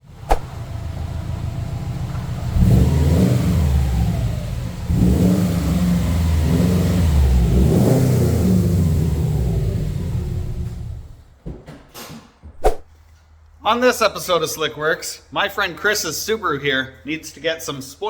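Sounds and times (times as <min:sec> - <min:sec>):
car engine revving: 0:00.0 - 0:11.2.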